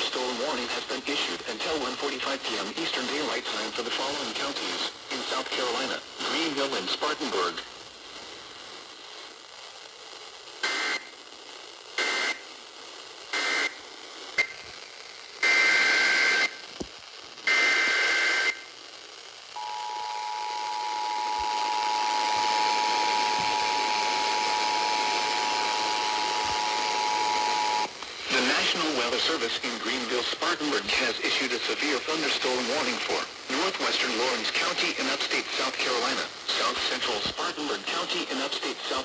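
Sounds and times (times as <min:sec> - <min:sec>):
radio hiss: 0:00.0 - 0:39.0
steady two-tone attention signal: 0:19.6 - 0:27.9
screeching data bursts: 0:19.6 - 0:28.6.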